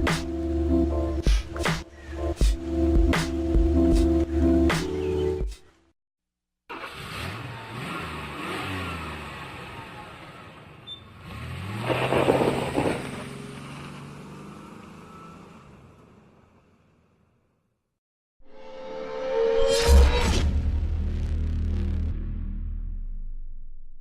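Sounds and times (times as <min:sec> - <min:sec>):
car engine accelerating through gears: 0:06.7 - 0:16.2.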